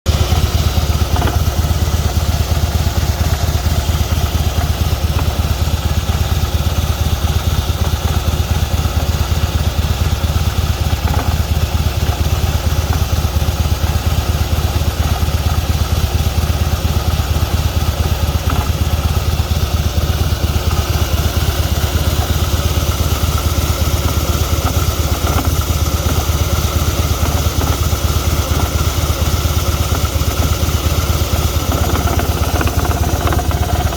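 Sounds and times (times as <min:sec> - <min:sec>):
motorcycle engine idling: 0:00.1 - 0:33.9
strange noise from motorcycle: 0:00.1 - 0:33.9.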